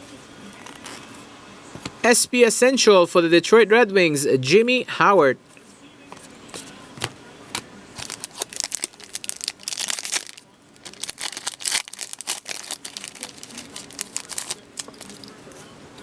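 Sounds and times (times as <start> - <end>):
card pack wrapper crinkling and tearing: 8.0 - 15.3.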